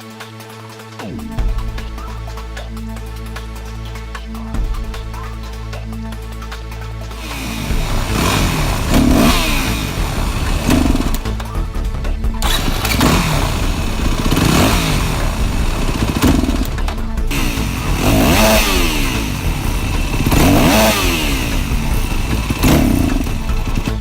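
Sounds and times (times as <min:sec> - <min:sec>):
motorcycle engine revving: 0:07.1 - 0:24.0.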